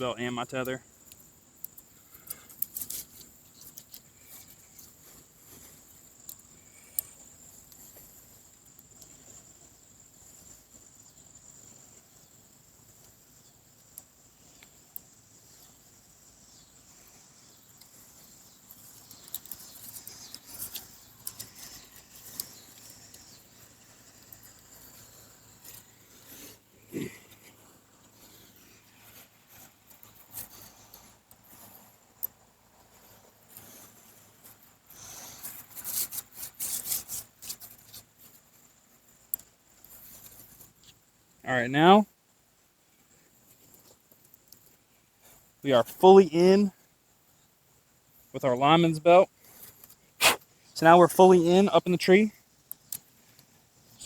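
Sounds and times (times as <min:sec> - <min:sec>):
rustles and clicks of climbing gear: 0:00.0 - 0:41.5, 0:42.1 - 0:48.3, 0:49.3 - 0:50.8, 0:52.3 - 0:54.0
high insect trill: 0:00.0 - 0:42.2.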